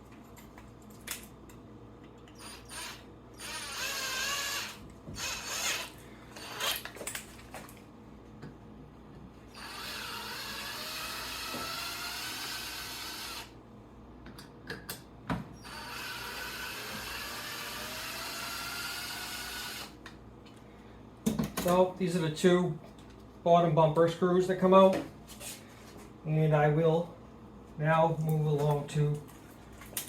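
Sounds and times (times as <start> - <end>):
cordless drill whining: 2.4 - 6.9, 9.5 - 13.5, 15.6 - 20.0.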